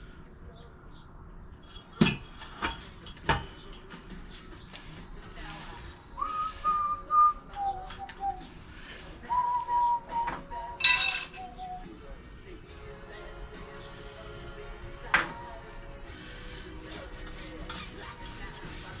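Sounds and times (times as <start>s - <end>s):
person whistling a slow tune: 6.2s - 8.5s, 9.2s - 12.0s.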